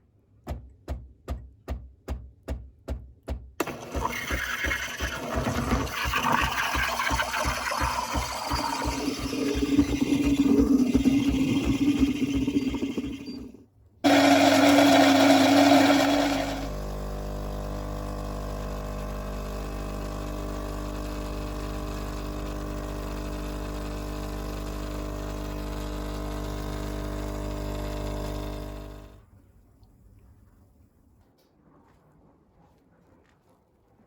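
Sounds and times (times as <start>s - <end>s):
kitchen appliance motor running: 3.6s - 29.2s.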